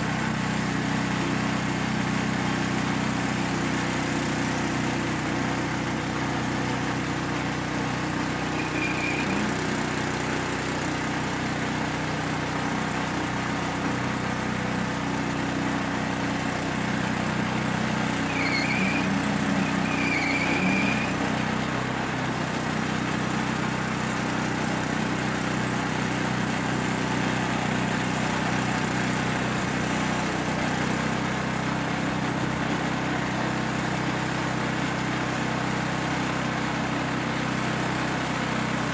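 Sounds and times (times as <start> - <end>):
sawmill gas engine running: 0.0 - 38.9
band blade cutting log: 8.5 - 10.0, 16.8 - 21.5
short high chirps: 8.6 - 9.5.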